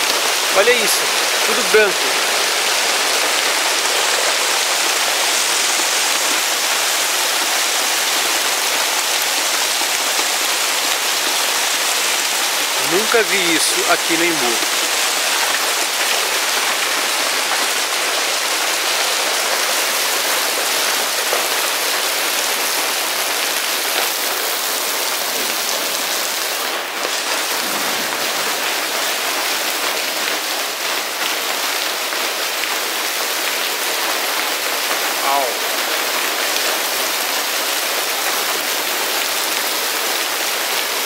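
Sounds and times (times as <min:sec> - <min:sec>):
hailstones pelting down: 0:00.0 - 0:41.0.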